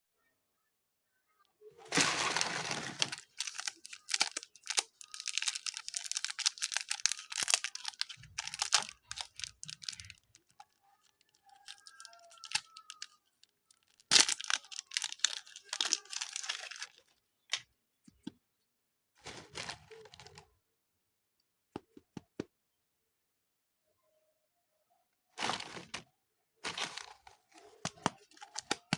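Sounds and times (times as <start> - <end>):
slime crackling and tearing: 1.9 - 13.1, 13.7 - 17.0, 26.7 - 28.9.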